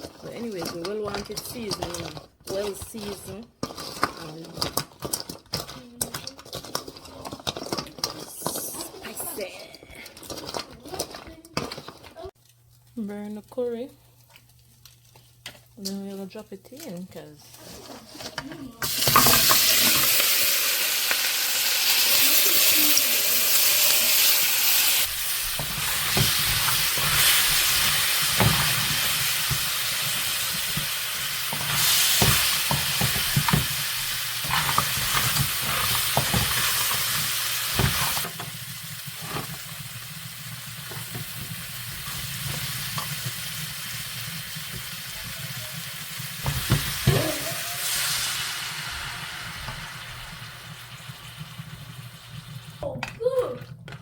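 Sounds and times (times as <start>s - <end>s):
crab frying in hot oil: 18.8s - 53.4s.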